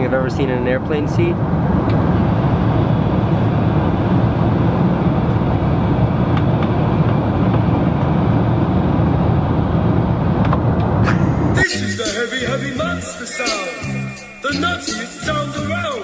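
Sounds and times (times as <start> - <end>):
jet airliner cabin noise: 0.0 - 15.0.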